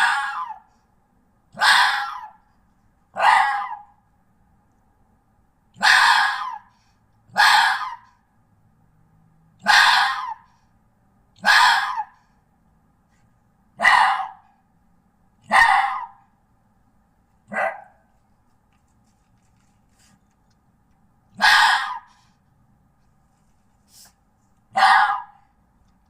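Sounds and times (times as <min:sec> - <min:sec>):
fox barking: 0:00.0 - 0:00.7, 0:01.5 - 0:02.4, 0:03.1 - 0:04.0, 0:05.8 - 0:08.2, 0:09.6 - 0:10.6, 0:11.4 - 0:12.3, 0:13.8 - 0:14.6, 0:15.4 - 0:16.3, 0:17.5 - 0:18.1, 0:21.3 - 0:22.3, 0:24.7 - 0:25.5.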